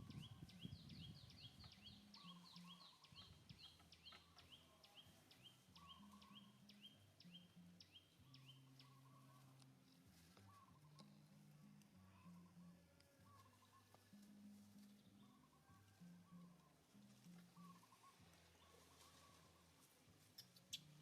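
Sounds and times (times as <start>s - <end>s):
soft bird warbling: 13.2s - 14.2s, 17.4s - 21.0s.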